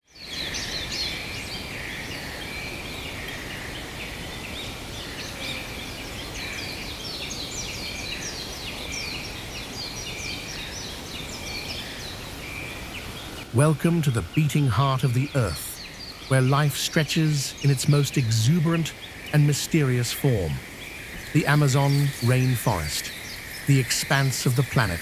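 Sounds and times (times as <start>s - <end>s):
steady background hiss: 0.2s - 25.0s
birds chirping and whistling: 14.3s - 25.0s.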